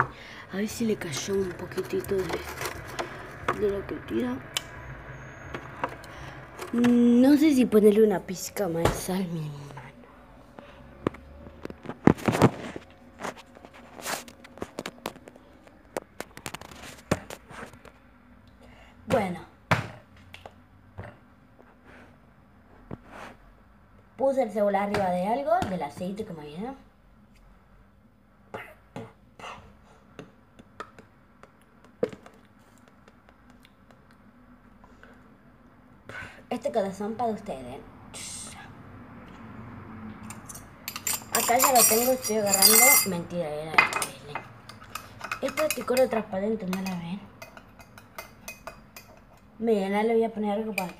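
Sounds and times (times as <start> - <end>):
containers clicking and tapping: 1.0 - 3.7.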